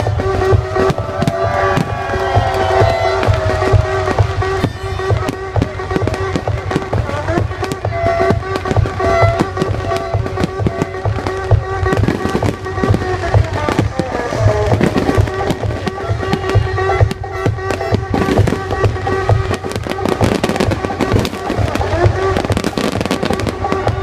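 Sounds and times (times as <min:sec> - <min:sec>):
fireworks bangs and crackles: 0:00.0 - 0:24.0
loud music with low beat: 0:00.0 - 0:24.0.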